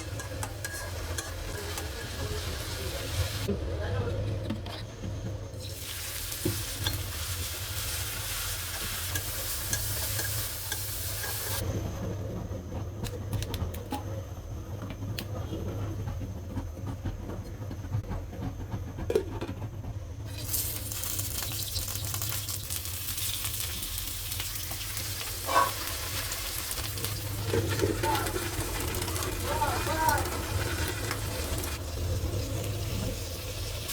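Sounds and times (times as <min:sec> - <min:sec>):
food sizzling in a pan: 0:00.0 - 0:03.5, 0:05.6 - 0:11.6, 0:20.3 - 0:33.9.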